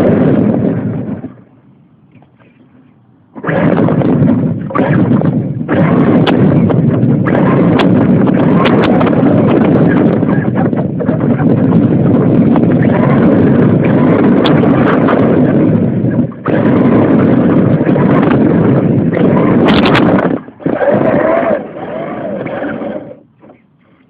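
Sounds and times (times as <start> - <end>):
wind on microphone: 0.0 - 24.0.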